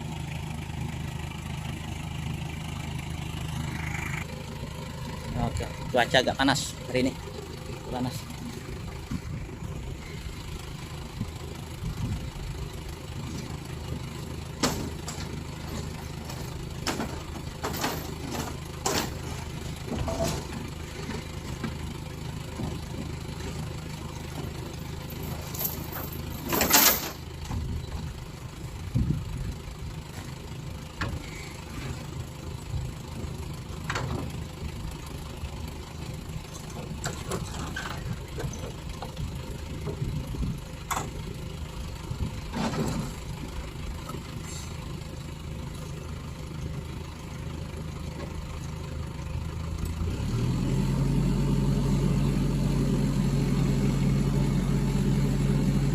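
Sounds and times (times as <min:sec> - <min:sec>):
truck engine idling: 0:00.0 - 0:55.9
knocks and clanks: 0:14.6 - 0:21.8, 0:25.2 - 0:27.7, 0:42.5 - 0:43.2.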